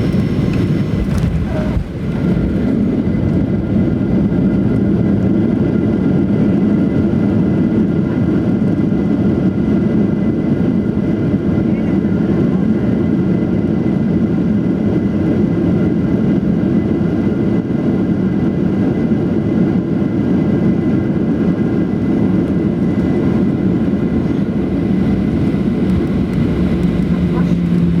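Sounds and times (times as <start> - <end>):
jet cabin engine roar: 0.0 - 28.0.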